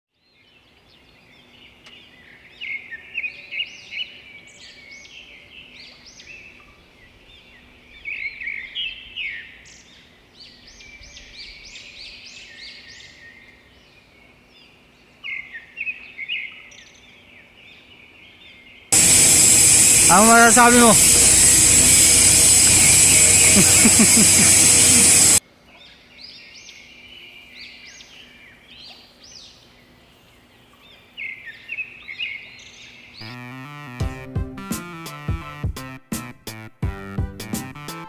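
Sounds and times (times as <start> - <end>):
small birds chirping: 15.2 - 33.2.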